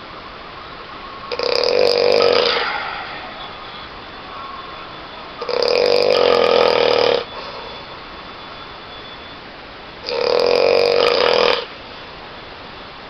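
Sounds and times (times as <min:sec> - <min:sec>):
person snoring loudly: 0:01.3 - 0:02.6, 0:05.4 - 0:07.2, 0:10.1 - 0:11.7.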